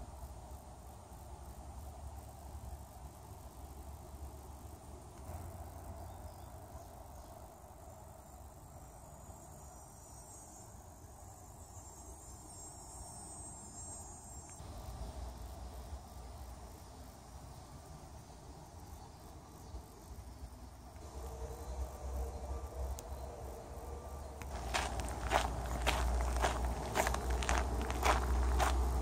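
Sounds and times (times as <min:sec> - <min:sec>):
insects trilling high-pitched: 0:00.0 - 0:29.0.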